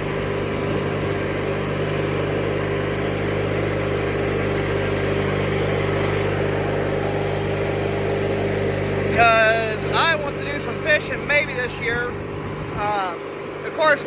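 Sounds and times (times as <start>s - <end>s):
riding lawnmower engine running: 0.0s - 14.0s.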